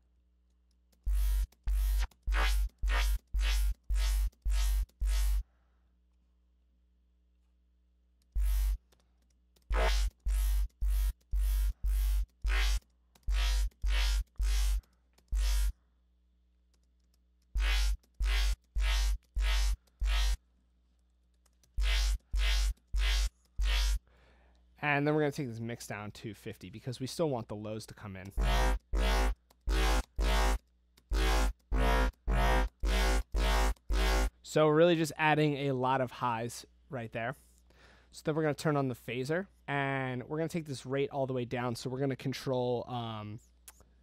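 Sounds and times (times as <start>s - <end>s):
distorted dubstep bass stabs: 1.1s - 5.4s, 9.7s - 14.8s, 15.4s - 15.7s, 17.6s - 20.4s, 21.8s - 24.0s, 28.4s - 34.3s.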